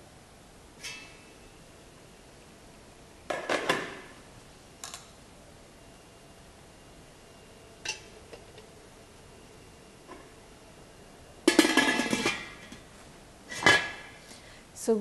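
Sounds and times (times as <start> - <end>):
metal cookware clanking: 0.8 - 1.3, 7.8 - 8.2, 11.5 - 12.8.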